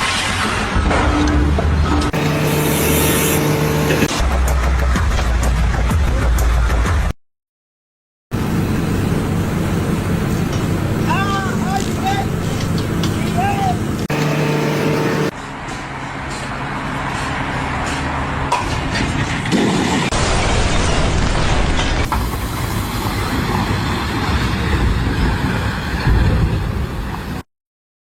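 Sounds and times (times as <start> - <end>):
heavy machinery engines running: 1.8 - 4.8, 8.4 - 19.5.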